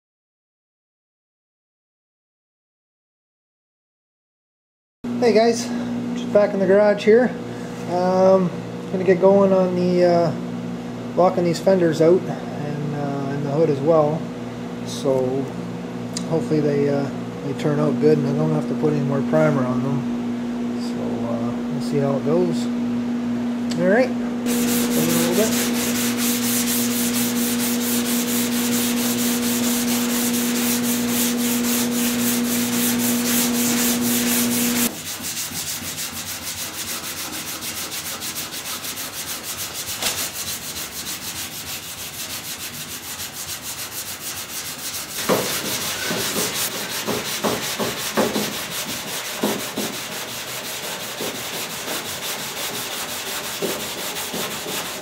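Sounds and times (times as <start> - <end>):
steady hum: 5.1 - 36.0
sandpaper rubbing back and forth: 24.5 - 55.0.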